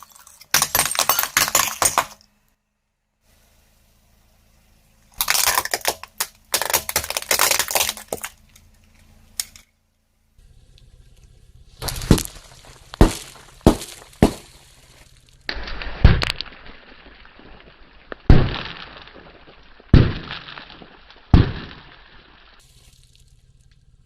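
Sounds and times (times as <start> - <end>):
glass breaking: 0.0 - 2.3, 5.2 - 8.5, 11.8 - 23.0.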